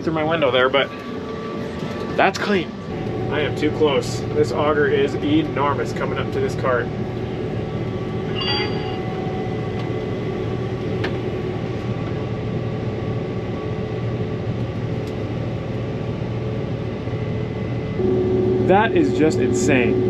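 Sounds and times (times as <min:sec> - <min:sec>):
combine harvester drone from cab: 0:00.0 - 0:20.0
short high tone: 0:08.3 - 0:09.1, 0:18.0 - 0:20.0.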